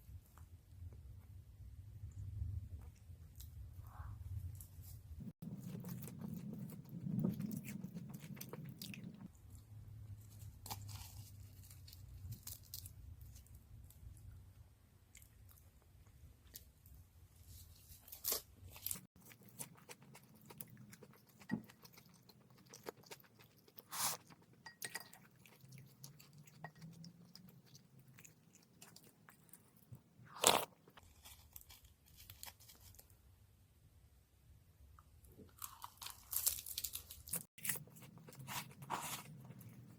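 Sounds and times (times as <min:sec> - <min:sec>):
chewing crisp seaweed: 0:05.4 - 0:09.4, 0:17.5 - 0:33.1, 0:35.6 - 0:39.9.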